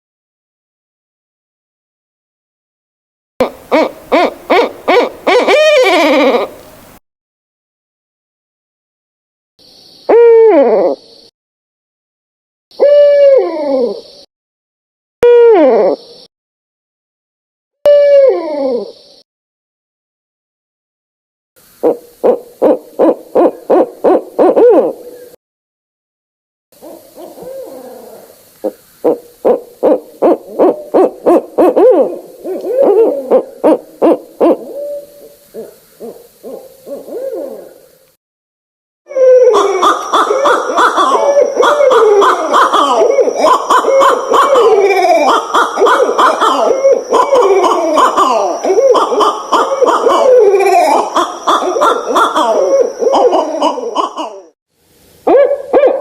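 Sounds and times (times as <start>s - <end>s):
owl wavering cries: 3.4s - 7.0s, 10.1s - 11.3s, 12.7s - 14.3s, 15.2s - 16.3s, 17.9s - 19.2s, 21.8s - 25.4s, 26.8s - 37.9s, 39.1s - 54.6s, 55.3s - 56.0s
owls hooting: 3.4s - 7.0s, 10.1s - 11.1s, 12.7s - 14.3s, 15.2s - 16.3s, 17.9s - 19.2s, 21.8s - 25.4s, 26.8s - 37.9s, 39.1s - 54.6s.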